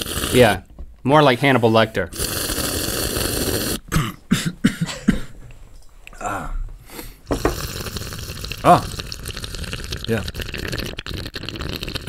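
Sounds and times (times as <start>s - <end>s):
man slurping through teeth: 0.0s - 0.6s, 2.1s - 3.8s, 7.2s - 12.0s.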